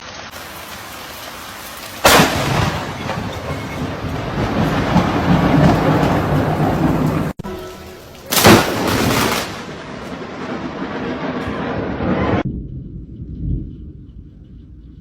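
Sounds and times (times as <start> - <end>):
rain falling: 0.0 - 12.1
rolling rumble of thunder: 2.0 - 7.4, 8.3 - 15.0
sharp thunderclap: 2.0 - 7.4, 8.3 - 14.3.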